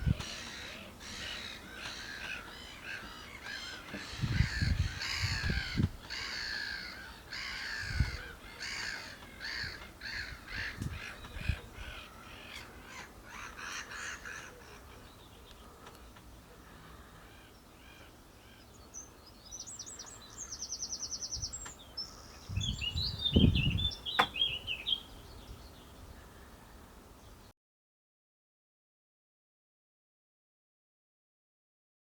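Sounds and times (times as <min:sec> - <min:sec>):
gulls calling: 0:00.0 - 0:25.3.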